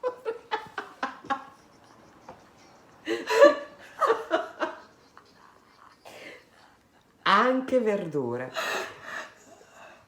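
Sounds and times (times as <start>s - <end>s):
women laughing: 0.0s - 6.5s.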